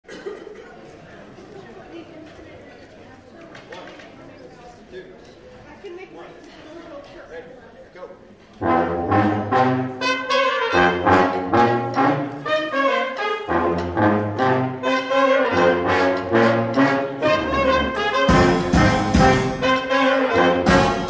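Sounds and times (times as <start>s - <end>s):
brass band playing: 8.6s - 21.0s.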